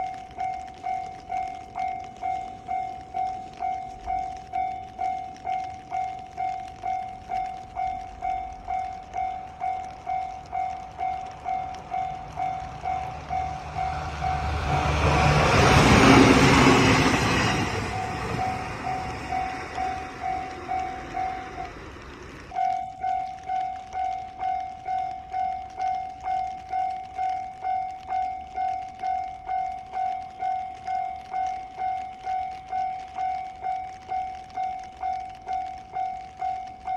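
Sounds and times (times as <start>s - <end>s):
level-crossing alarm bell: 0.0s - 21.9s, 22.5s - 36.9s
electric train passing: 0.0s - 23.6s.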